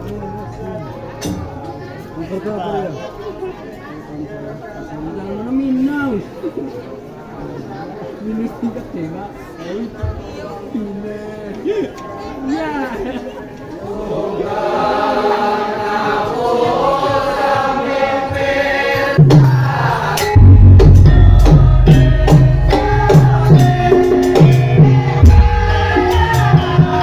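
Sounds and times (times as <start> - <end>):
gamelan music: 0.0 - 2.5, 19.2 - 27.0
drums beating: 14.6 - 27.0
sharp percussion strokes: 18.4 - 27.0
person singing: 19.6 - 27.0.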